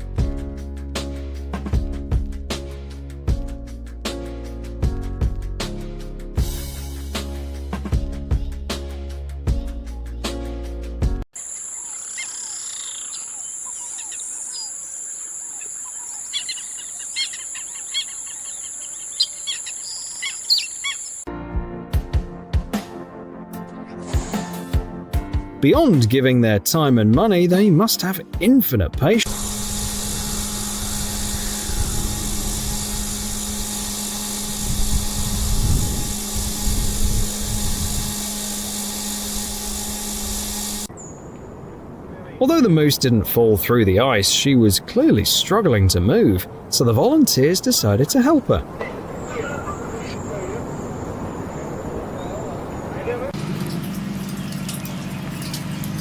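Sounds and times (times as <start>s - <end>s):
birds chirping: 11.3s - 21.3s, 40.6s - 53.4s
high-pitched insect buzz: 11.4s - 21.3s, 29.2s - 40.9s
motor drone: 29.2s - 40.9s.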